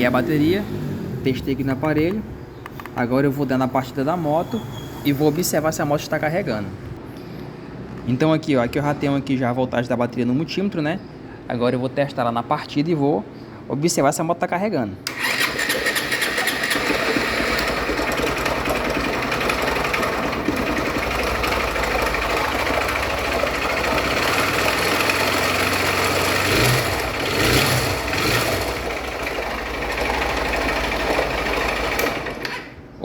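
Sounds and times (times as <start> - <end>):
motorcycle engine clattering: 15.1 - 32.6.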